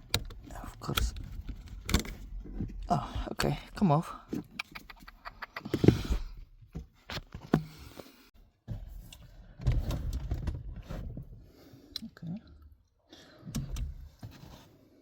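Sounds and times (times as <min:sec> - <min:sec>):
sharp clicks and knocks: 0:04.3 - 0:06.1.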